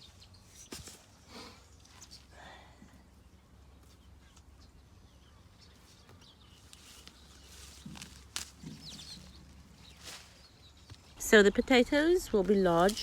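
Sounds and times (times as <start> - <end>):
light knocks and rustles: 6.0 - 9.4.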